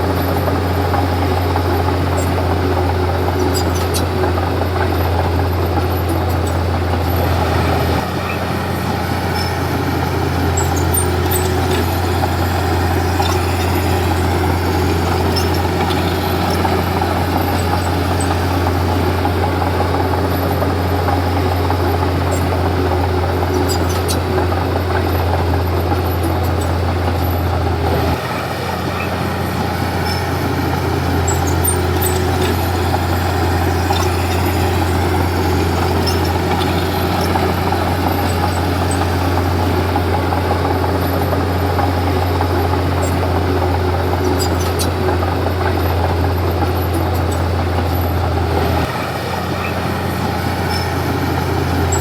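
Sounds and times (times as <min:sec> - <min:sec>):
bulldozer diesel engine drone: 0:00.0 - 0:52.0.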